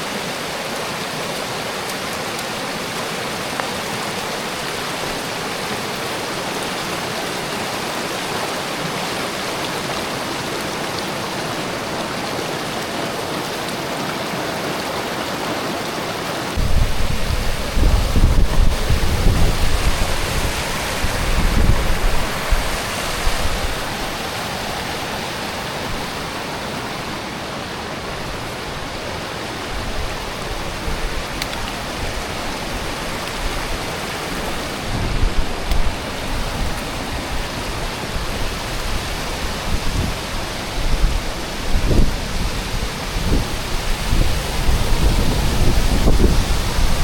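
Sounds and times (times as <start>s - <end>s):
wind buffeting microphone: 16.6s - 24.9s, 29.6s - 47.0s.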